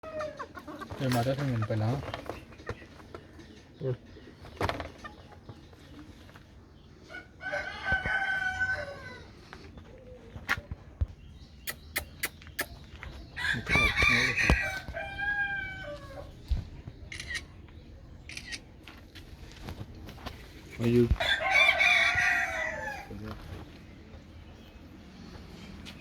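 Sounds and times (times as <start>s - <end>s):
rooster crowing: 7.4s - 9.3s, 13.4s - 16.2s, 21.2s - 23.1s.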